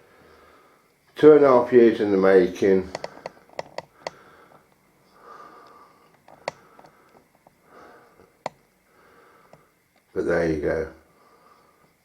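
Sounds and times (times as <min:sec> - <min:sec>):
soft breath or sniff: 0:03.9 - 0:09.8.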